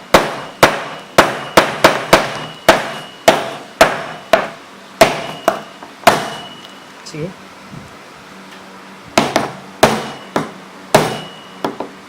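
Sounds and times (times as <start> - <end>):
metal tool striking glass: 0.2 - 6.6, 9.2 - 11.8.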